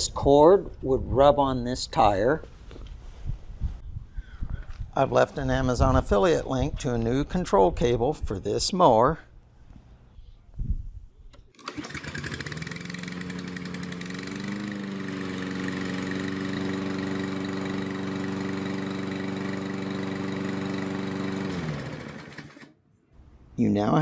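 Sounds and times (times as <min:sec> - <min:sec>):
lawn mower engine running: 0:11.6 - 0:22.8.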